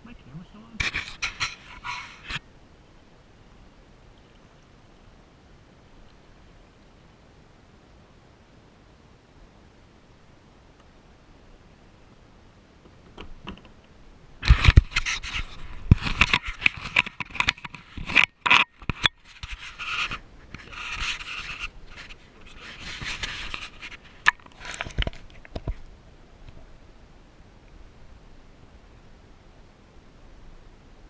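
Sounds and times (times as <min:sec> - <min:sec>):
scraping against camera case: 0:00.8 - 0:02.4, 0:14.4 - 0:25.8.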